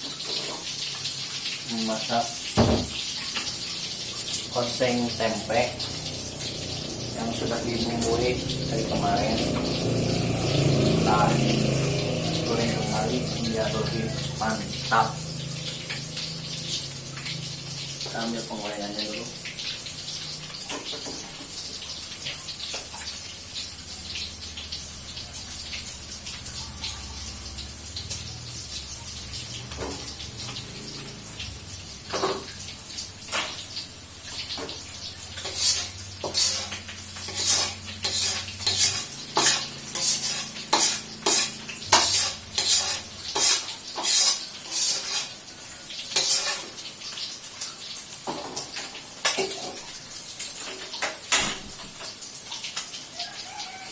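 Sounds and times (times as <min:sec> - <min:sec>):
water running from tap: 0:00.0 - 0:53.9.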